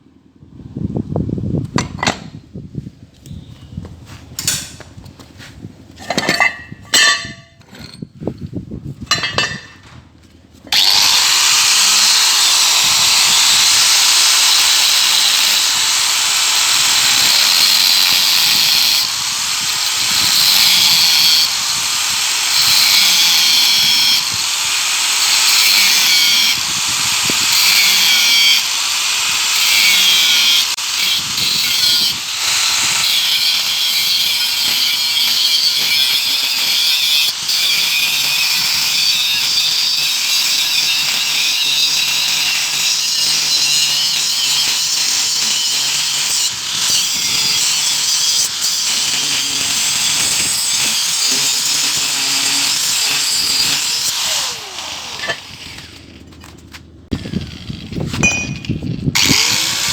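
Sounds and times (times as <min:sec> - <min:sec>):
power tool cutting metal: 0:10.7 - 0:56.2, 0:57.1 - 0:59.9.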